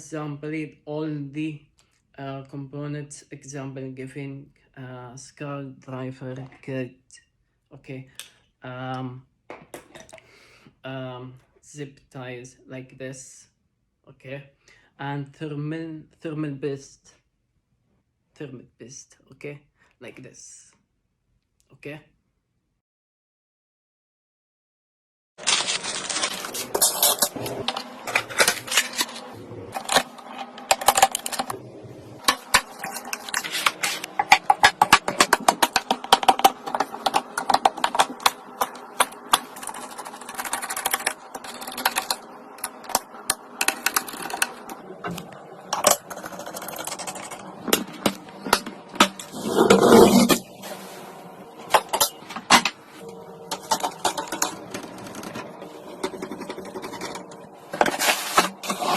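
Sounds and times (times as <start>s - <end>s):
rattling scrape: 25.5s - 31.6s, 32.2s - 58.9s.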